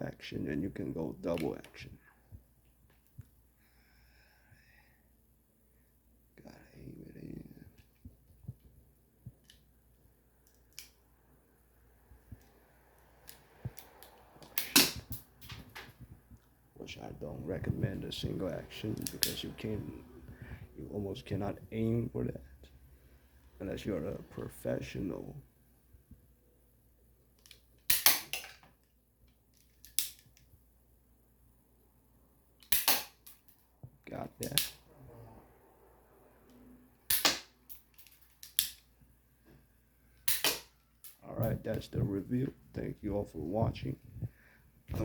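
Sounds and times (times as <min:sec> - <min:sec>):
toy revolver firing snap: 0:14.6 - 0:15.1, 0:27.9 - 0:28.5, 0:32.6 - 0:33.3, 0:37.1 - 0:37.5, 0:40.2 - 0:40.7
plastic toy gun clicks: 0:27.4 - 0:28.6, 0:32.6 - 0:33.4, 0:37.1 - 0:38.8, 0:40.3 - 0:40.7.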